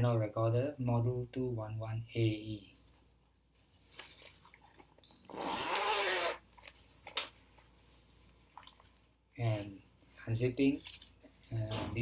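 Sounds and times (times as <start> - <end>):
zipper pulled open: 5.3 - 6.4.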